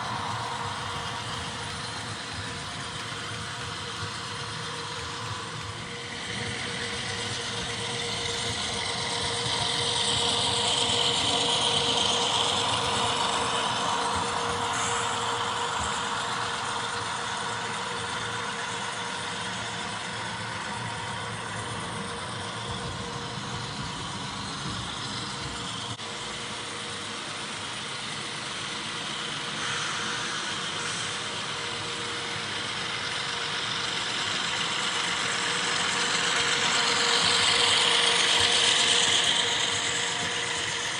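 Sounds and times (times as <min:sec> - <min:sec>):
model train running hum: 0:00.0 - 0:40.9.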